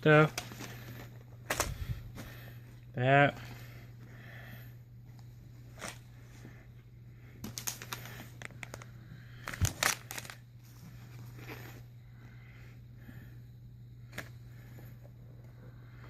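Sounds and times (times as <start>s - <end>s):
steady low hum: 0.0s - 16.0s
packaging crinkles and clicks: 7.4s - 10.4s.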